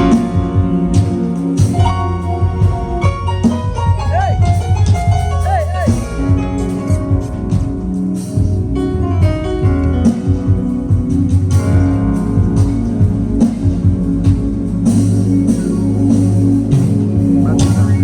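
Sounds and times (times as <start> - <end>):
bass line: 0.0 - 18.0
guitar: 0.0 - 18.0
live band playing: 0.0 - 18.0
percussion hits: 0.0 - 18.0.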